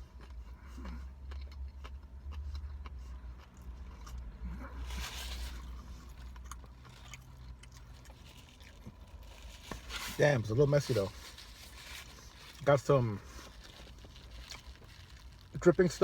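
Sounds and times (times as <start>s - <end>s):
person chewing: 0.0s - 10.2s, 10.9s - 15.5s
rustle: 9.2s - 15.5s.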